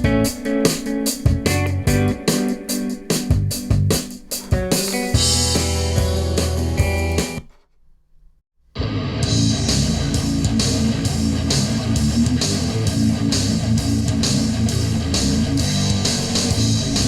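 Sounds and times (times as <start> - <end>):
guitar rock music with drums: 0.0 - 7.6, 8.8 - 17.0.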